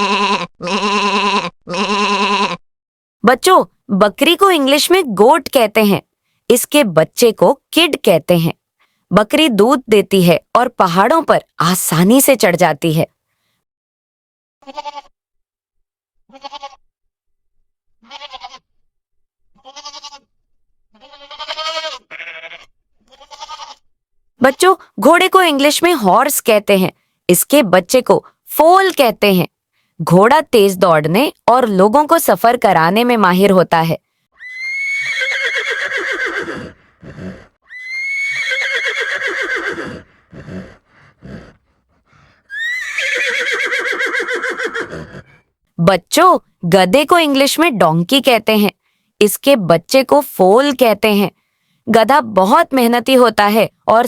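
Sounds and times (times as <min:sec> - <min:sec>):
goat bleating: 0:00.0 - 0:02.6, 0:14.6 - 0:15.1, 0:16.3 - 0:16.9, 0:18.0 - 0:18.7, 0:19.6 - 0:20.3, 0:20.9 - 0:23.8
horse whinnying: 0:34.4 - 0:41.6, 0:42.5 - 0:45.4.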